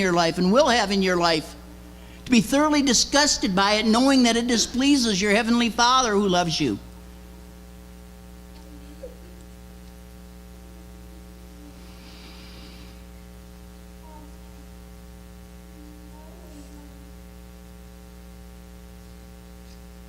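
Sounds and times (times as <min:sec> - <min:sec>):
electrical mains hum: 0:00.0 - 0:20.0
soft hiss: 0:06.2 - 0:20.0.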